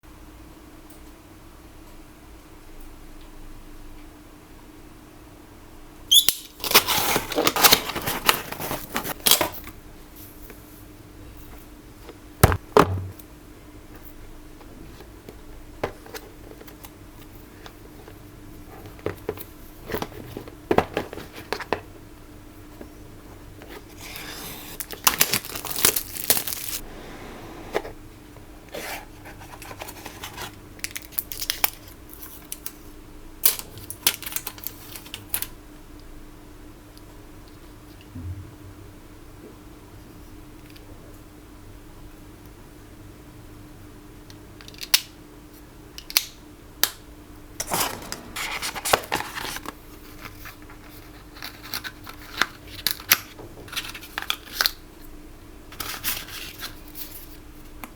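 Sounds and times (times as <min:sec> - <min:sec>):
packaging rustling and tearing: 0:06.6 - 0:09.6, 0:23.8 - 0:26.8, 0:28.8 - 0:32.7, 0:47.6 - 0:54.8
clicks and knocks: 0:47.6 - 0:49.7.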